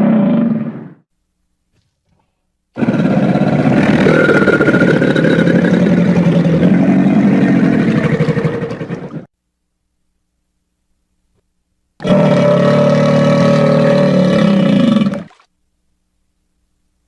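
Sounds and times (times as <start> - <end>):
creature growl with rattle: 2.8 - 9.3, 12.0 - 15.3.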